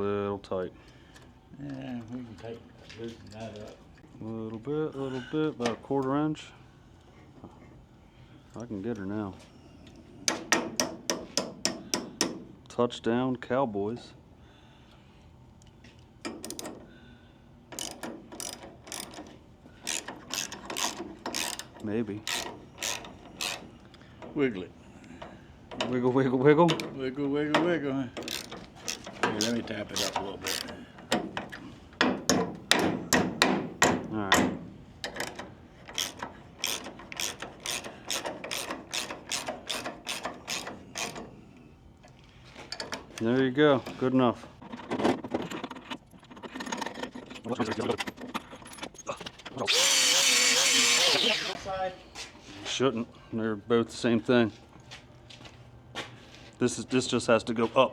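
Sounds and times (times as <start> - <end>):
ratchet wrench clicking: 16.3 - 16.8, 17.7 - 23.9, 28.2 - 30.8, 35.0 - 41.3.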